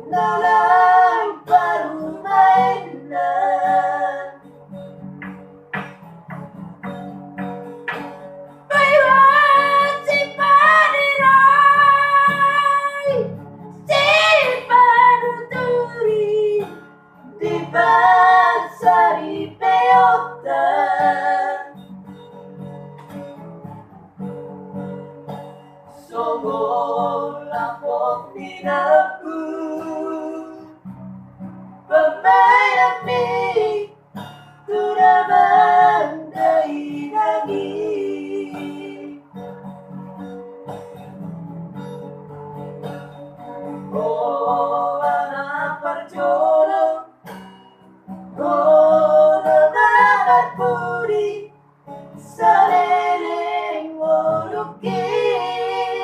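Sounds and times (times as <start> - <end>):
high voice singing with vibrato: 0.0 - 4.4, 8.7 - 21.7, 31.9 - 33.9, 34.7 - 39.2, 48.4 - 51.5, 52.3 - 56.0
plucked guitar: 0.0 - 56.0.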